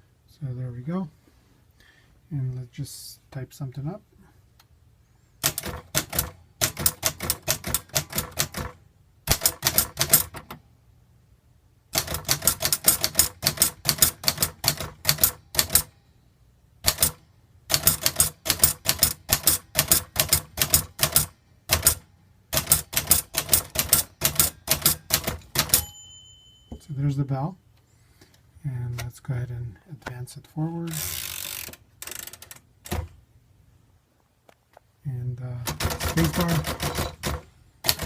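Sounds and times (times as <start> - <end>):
typewriter key strikes: 5.4 - 10.6, 12.0 - 15.9, 16.8 - 22.0, 22.6 - 25.9, 35.6 - 38.0.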